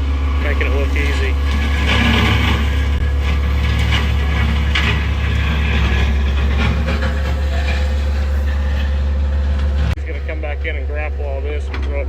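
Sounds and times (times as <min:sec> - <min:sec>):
diesel engine running under load: 0:00.0 - 0:12.0.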